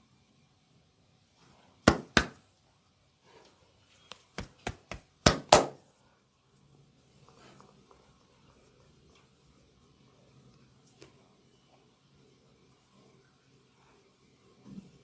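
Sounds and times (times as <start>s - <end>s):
hand slaps on a body: 1.9s - 2.4s, 4.4s - 5.8s.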